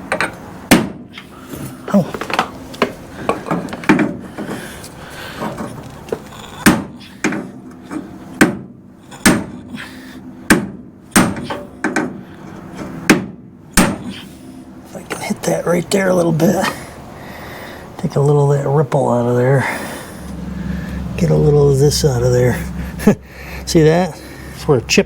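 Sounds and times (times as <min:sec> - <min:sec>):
hammer striking steel frame: 0:00.0 - 0:01.1, 0:06.6 - 0:07.4, 0:08.4 - 0:09.6, 0:10.5 - 0:12.2, 0:13.0 - 0:14.1.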